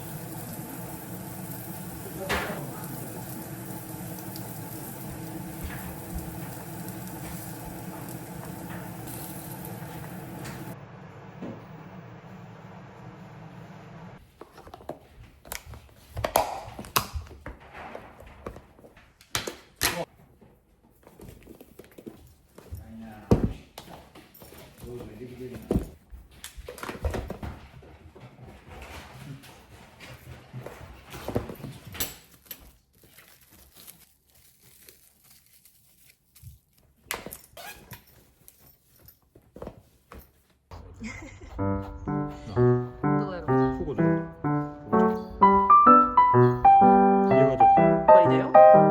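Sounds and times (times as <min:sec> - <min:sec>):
rustling and crinkling: 0:20.1 - 0:41.0.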